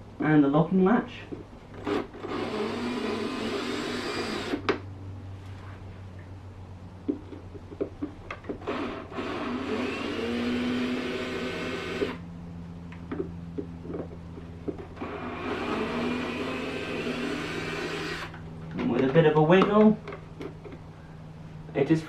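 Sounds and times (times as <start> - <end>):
electric drill-driver running: 1.8 - 4.6, 8.5 - 12.2, 15.0 - 18.4
handling clicks and knocks: 18.6 - 20.9.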